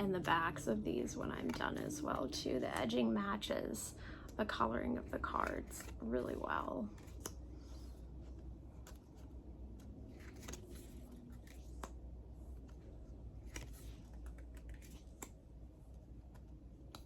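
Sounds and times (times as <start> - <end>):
cards clicking and tapping: 1.2 - 3.0, 6.9 - 7.4, 8.7 - 17.0
cards sliding: 6.9 - 17.0.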